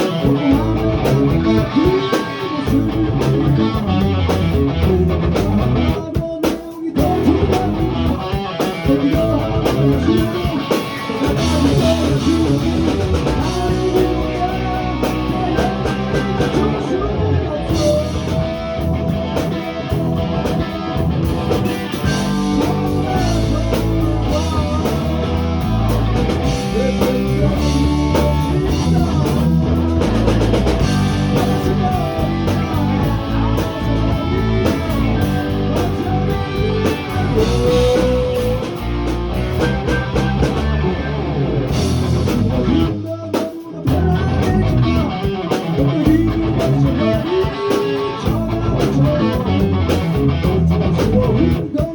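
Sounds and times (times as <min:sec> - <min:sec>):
rock music with guitar and drums: 0:00.0 - 0:51.9.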